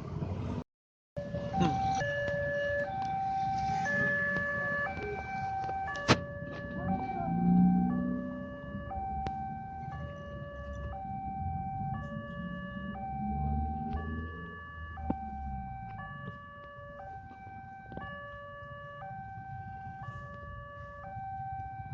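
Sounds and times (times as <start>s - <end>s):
two-tone hi-lo warning signal: 1.5s - 9.5s.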